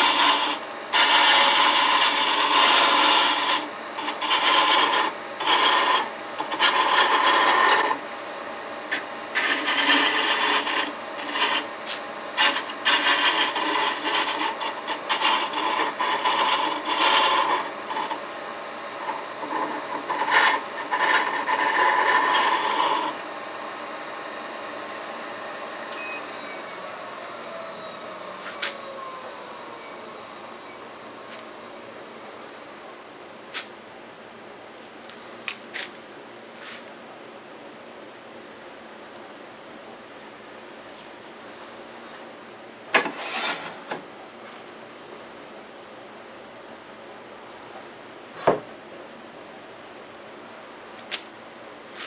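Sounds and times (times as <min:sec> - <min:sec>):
tool scraping wood on lathe: 0:00.0 - 0:08.0, 0:08.9 - 0:18.3, 0:18.9 - 0:23.3, 0:43.0 - 0:44.0
wood lathe winding down: 0:00.0 - 0:08.0, 0:08.9 - 0:11.7, 0:12.3 - 0:18.3, 0:18.9 - 0:31.4.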